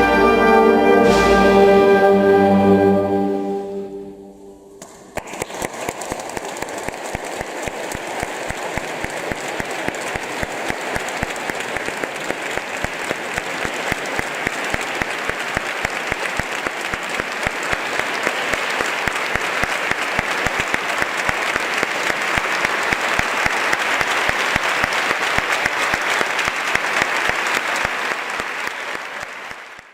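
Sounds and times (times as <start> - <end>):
brass band march: 0.0 - 4.3
audience applauding: 4.8 - 29.9.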